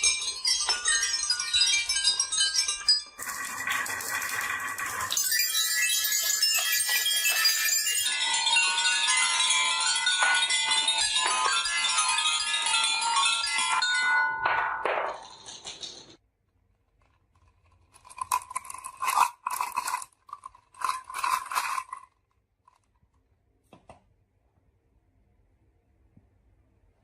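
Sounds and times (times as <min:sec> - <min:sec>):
marbles clinking down a marble run: 0:00.0 - 0:16.2, 0:18.0 - 0:22.2.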